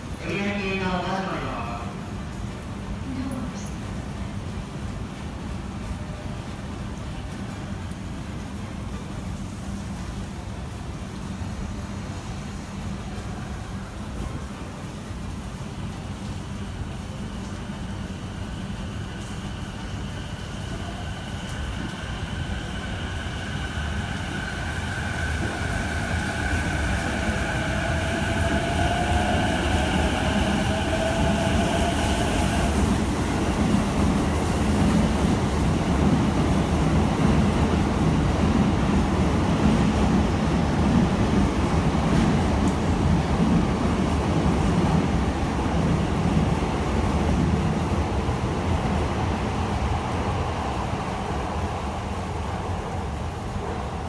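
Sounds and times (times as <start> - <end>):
train rumbling on rails: 0.0 - 54.0
train motor whine: 21.4 - 34.6.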